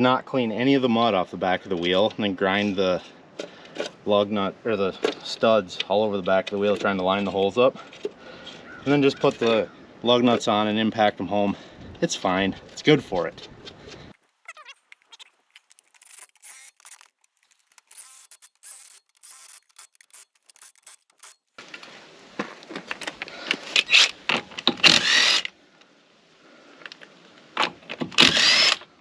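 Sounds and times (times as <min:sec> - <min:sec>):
impact wrench bursts: 0:14.5 - 0:21.4, 0:24.8 - 0:25.5, 0:28.2 - 0:28.8.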